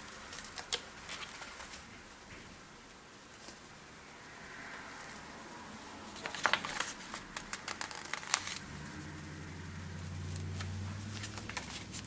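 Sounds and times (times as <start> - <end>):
sticker sheets crinkling: 0.0 - 2.4, 6.1 - 9.2, 10.0 - 12.0
low steady hum: 0.0 - 12.0.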